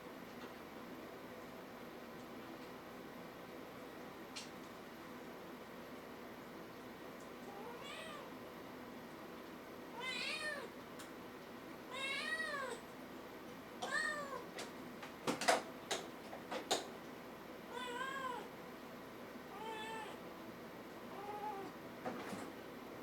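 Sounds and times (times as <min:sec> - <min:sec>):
cat meowing: 0:10.0 - 0:10.7, 0:11.9 - 0:12.8, 0:13.8 - 0:14.4, 0:17.7 - 0:18.5, 0:19.5 - 0:20.2, 0:21.2 - 0:21.7.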